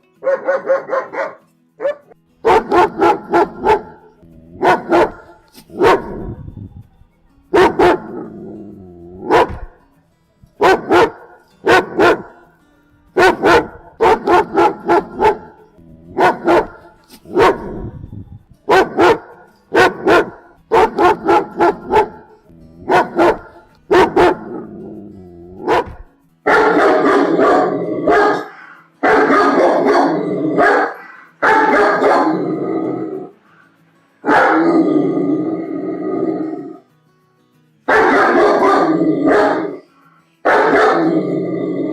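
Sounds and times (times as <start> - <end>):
dog barking aggressively: 0.2 - 6.4, 7.5 - 8.6, 9.2 - 9.8, 10.6 - 12.4, 13.2 - 17.9, 18.7 - 24.9, 25.6 - 33.3, 34.2 - 35.0, 37.9 - 39.8, 40.5 - 41.4
dog growling barks: 0.2 - 6.6, 7.5 - 9.8, 10.6 - 12.4, 13.2 - 18.1, 18.7 - 33.4, 34.2 - 36.8, 37.9 - 41.9.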